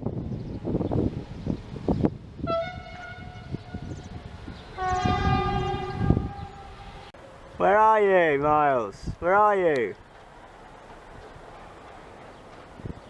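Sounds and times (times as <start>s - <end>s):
horn blasts: 2.4s - 7.1s.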